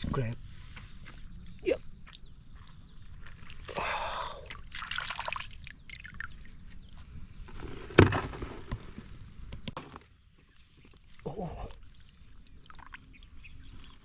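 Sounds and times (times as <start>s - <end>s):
water splashing and trickling: 3.1s - 6.8s, 10.4s - 14.0s.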